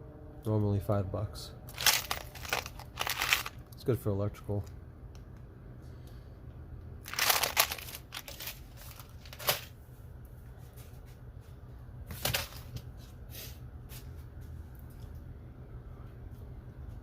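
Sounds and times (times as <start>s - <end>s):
steady low hum: 0.0s - 17.0s
plastic packaging rustling and clicking: 1.7s - 3.7s, 7.0s - 9.7s, 12.1s - 12.9s.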